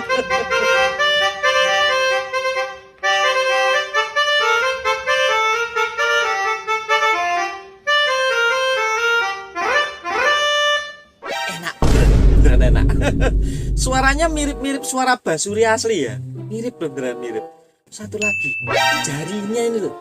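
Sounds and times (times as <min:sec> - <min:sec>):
bus horn playing melody: 0:00.0 - 0:11.0.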